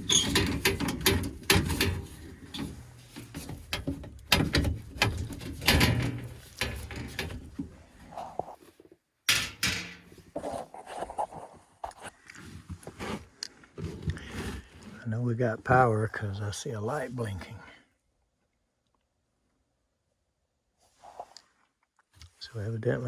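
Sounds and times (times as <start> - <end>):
sheet metal panel knocks and scrapes: 0.0 - 7.7, 9.3 - 10.2.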